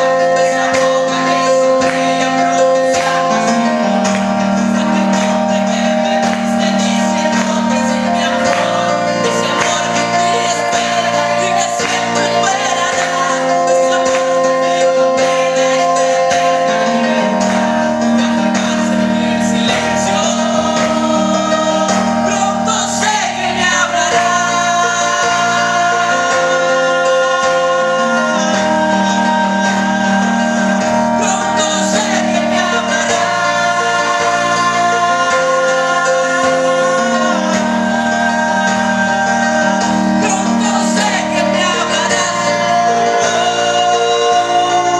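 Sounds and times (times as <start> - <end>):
instrumental accompaniment: 0.0 - 44.9
person singing worship song: 0.0 - 44.9.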